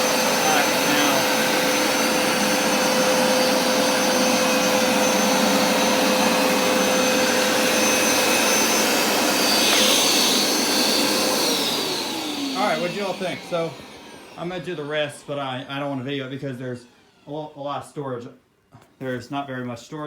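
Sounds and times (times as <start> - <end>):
steady high tone: 0.0 - 13.8
carpet cleaner motor hum: 0.0 - 16.0, 16.8 - 17.3.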